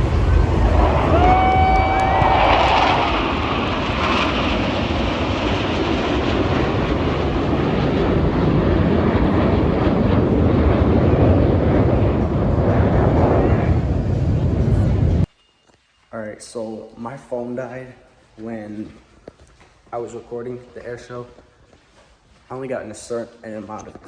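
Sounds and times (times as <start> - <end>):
high whistling tone: 0.0 - 4.6
jet engine rumble: 0.0 - 15.3.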